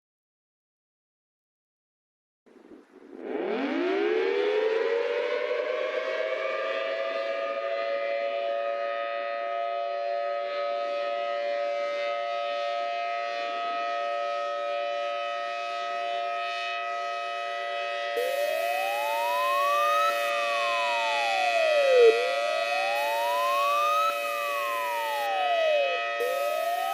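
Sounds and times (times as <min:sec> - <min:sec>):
civil defense siren wailing: 0:02.5 - 0:26.9
rising siren tone: 0:02.6 - 0:09.7, 0:17.8 - 0:26.9.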